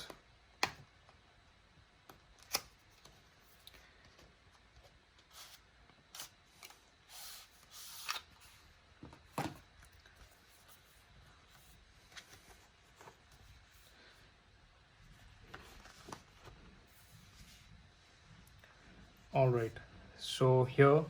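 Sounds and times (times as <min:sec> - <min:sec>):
cardboard and paper rustling: 0:07.6 - 0:14.0, 0:15.1 - 0:17.8.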